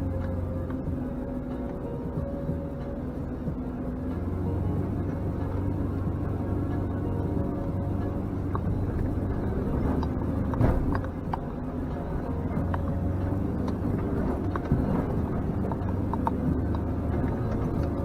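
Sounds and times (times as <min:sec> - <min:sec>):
engine running under load: 0:00.0 - 0:18.0
knocks and rattles: 0:09.8 - 0:11.4.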